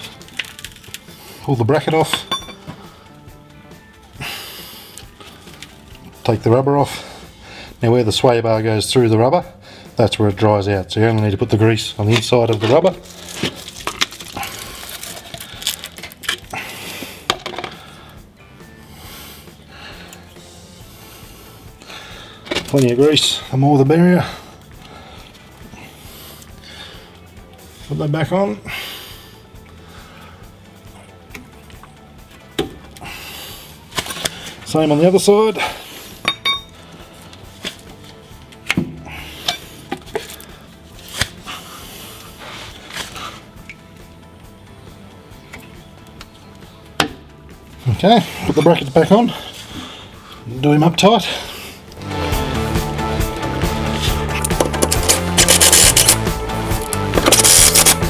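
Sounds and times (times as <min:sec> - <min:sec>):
faint background music: 0:00.0 - 0:58.0
metal tools clinking: 0:01.8 - 0:02.8, 0:12.1 - 0:16.6, 0:36.2 - 0:36.8, 0:54.4 - 0:56.2
metallic clinks and knocks: 0:02.1 - 0:02.8, 0:36.2 - 0:36.8.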